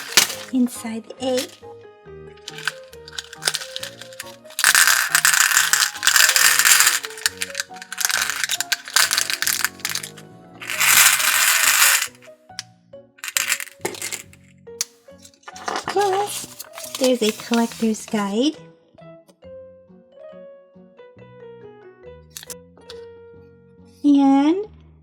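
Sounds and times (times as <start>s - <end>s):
candies rattling in plastic egg: 0.0s - 1.6s, 2.4s - 12.3s, 13.2s - 14.4s, 15.3s - 18.3s
background music: 0.0s - 25.0s.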